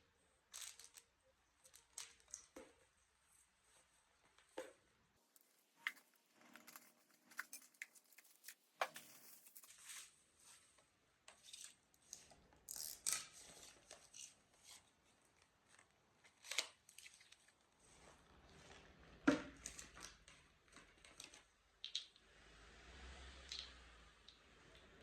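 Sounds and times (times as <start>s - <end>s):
small objects clicking and rustling: 0.5s - 2.8s, 5.3s - 10.1s, 19.6s - 22.2s.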